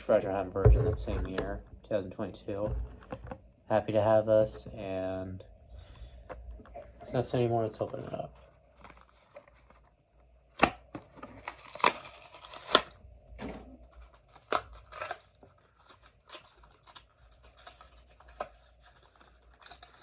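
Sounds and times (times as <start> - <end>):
blister pack tearing open: 10.6 - 13.0, 13.9 - 20.0.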